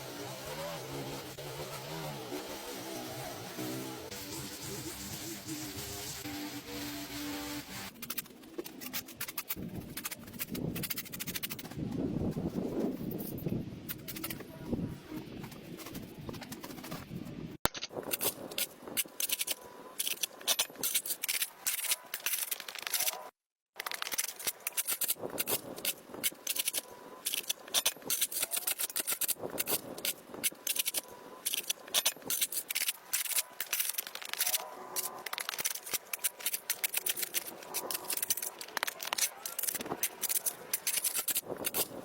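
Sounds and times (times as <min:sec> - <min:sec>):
grass and roots being torn out: 0:23.8 - 0:42.0.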